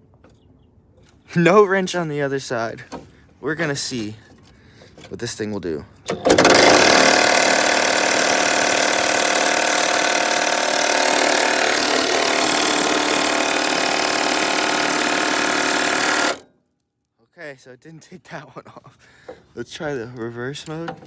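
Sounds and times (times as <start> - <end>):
impact wrench hammering: 6.2 - 16.4.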